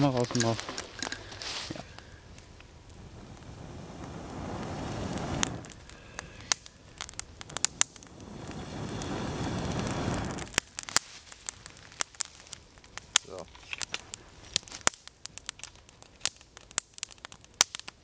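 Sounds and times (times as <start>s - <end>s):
campfire crackling and popping: 0.0s - 18.0s
rushing noise: 3.0s - 6.4s, 7.6s - 10.5s.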